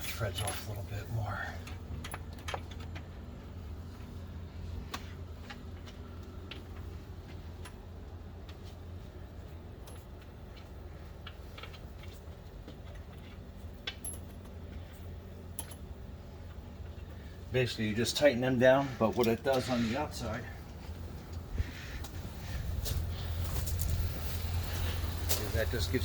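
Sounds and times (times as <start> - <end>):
steady low hum: 0.0 - 26.0
metallic clicks of nuts and washers: 9.7 - 17.2.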